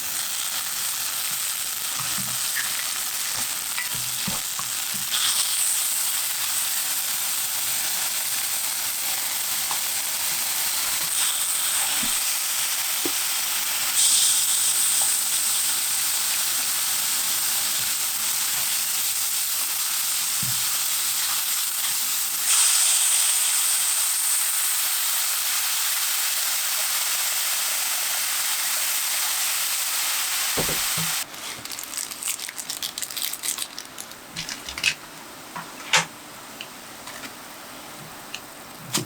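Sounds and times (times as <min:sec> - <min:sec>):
food sizzling in frying: 0:00.0 - 0:34.9.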